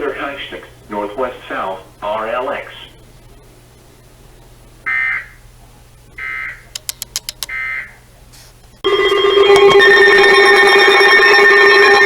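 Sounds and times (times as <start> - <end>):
loud steady alarm tone: 4.9 - 5.4, 6.2 - 6.8, 7.4 - 8.0, 8.8 - 12.0
quick run of clicks: 6.7 - 7.6.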